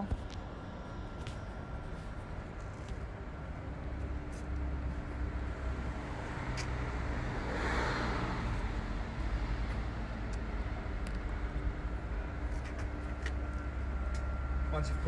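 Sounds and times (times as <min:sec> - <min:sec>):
steady low traffic rumble: 0:00.0 - 0:15.0
vehicle passing by: 0:05.6 - 0:10.8.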